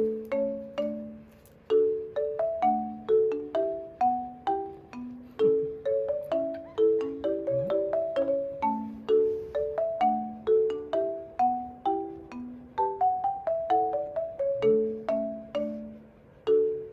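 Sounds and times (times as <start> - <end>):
bouncy marimba tune: 0.0 - 16.9.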